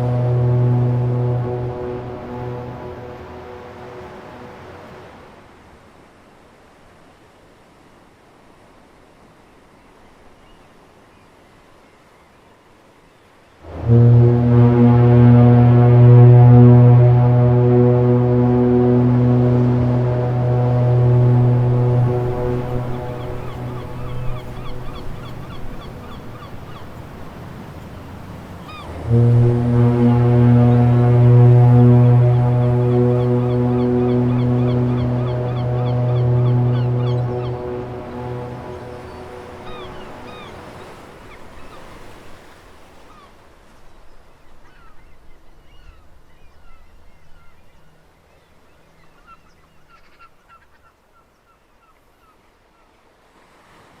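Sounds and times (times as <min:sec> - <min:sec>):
foghorn blast: 0:00.0 - 0:05.5, 0:13.6 - 0:27.8, 0:28.6 - 0:42.2
sea noise: 0:00.0 - 0:54.0
birds chirping: 0:19.0 - 0:42.2.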